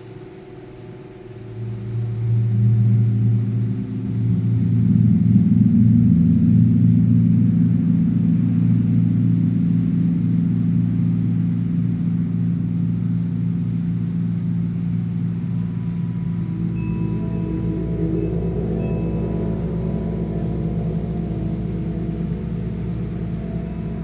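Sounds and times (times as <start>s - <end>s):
low chimes ringing: 15.6s - 24.0s.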